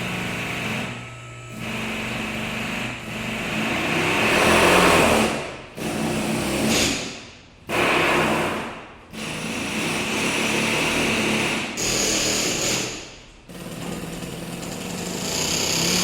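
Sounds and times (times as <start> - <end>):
power drill motor running: 0.0 - 5.0, 11.8 - 12.9, 13.6 - 16.0.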